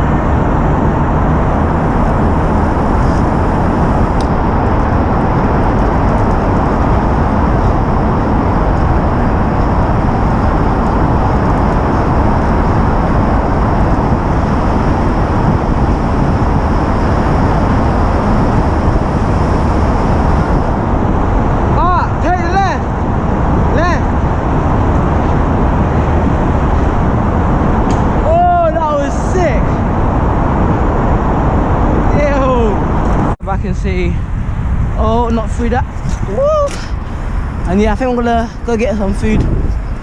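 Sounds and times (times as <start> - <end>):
wind buffeting microphone: 0.0 - 40.0.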